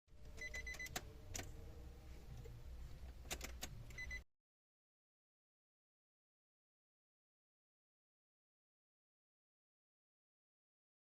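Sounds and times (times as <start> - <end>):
car warning chime beeps: 0.4 - 1.0, 3.9 - 4.2.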